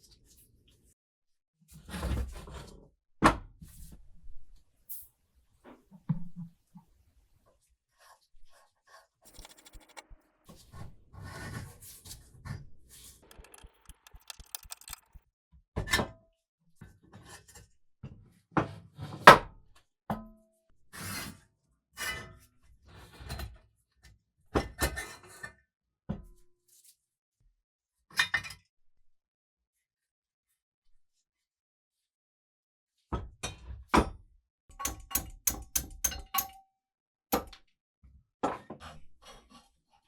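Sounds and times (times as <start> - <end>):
metal parts scraping and rattling: 9.3 - 10.2, 13.3 - 15.2
metal knocks and clinks: 13.3 - 15.2.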